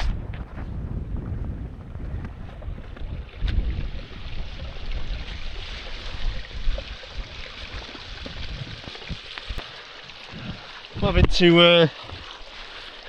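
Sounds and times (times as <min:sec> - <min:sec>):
wind buffeting microphone: 0:00.0 - 0:09.6.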